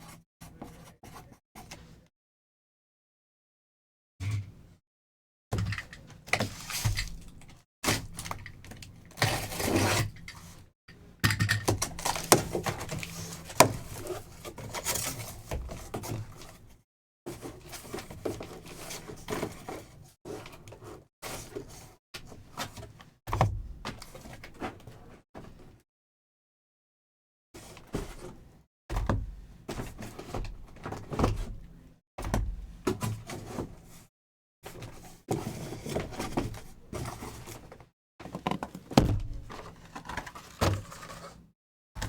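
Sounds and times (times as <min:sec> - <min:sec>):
cardboard boxes being handled: 0:11.9 - 0:16.4, 0:35.4 - 0:41.4.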